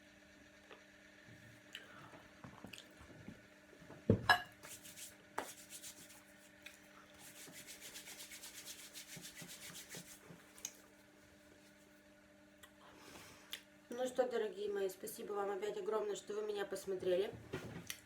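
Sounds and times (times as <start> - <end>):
fast even rubbing: 4.6 - 6.5, 7.2 - 10.3
chalk cracking: 4.6 - 10.8
chalk crunching: 7.2 - 10.8.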